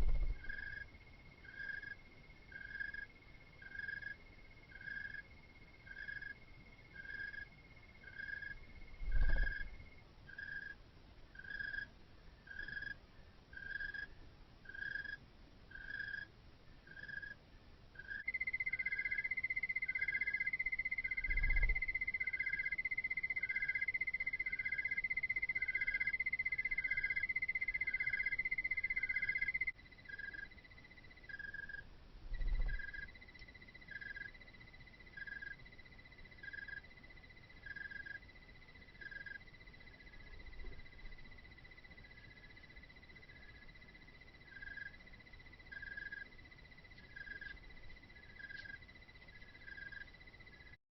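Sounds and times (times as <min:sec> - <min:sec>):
soft low thumps: 0:00.0 - 0:00.7.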